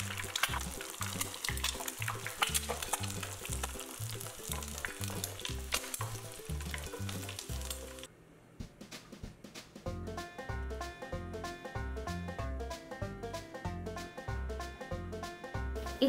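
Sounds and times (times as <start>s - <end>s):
egg frying in hot oil: 0.0s - 8.1s.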